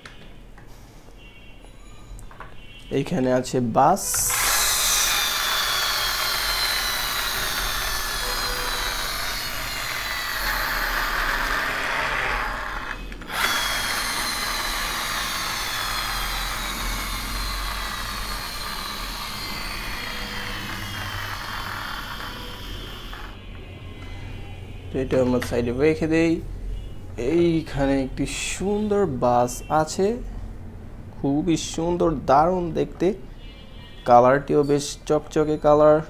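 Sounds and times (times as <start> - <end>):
drill-like whirring with whine: 4.1 - 23.4.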